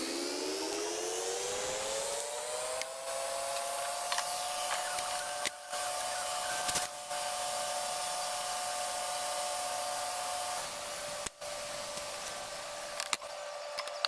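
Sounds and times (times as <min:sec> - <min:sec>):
mechanical whirring hiss: 0:00.0 - 0:14.0.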